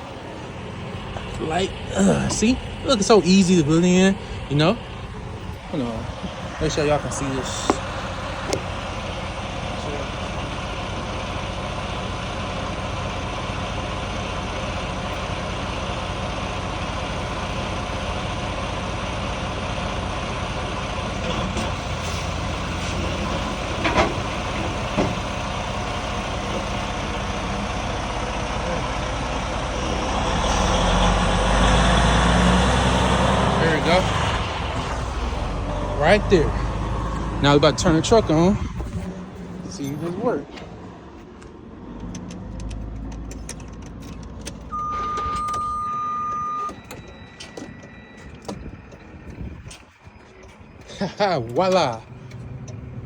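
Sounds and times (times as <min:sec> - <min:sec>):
diesel truck engine idling: 0:00.0 - 0:53.0
electronic warning beep: 0:44.7 - 0:48.6.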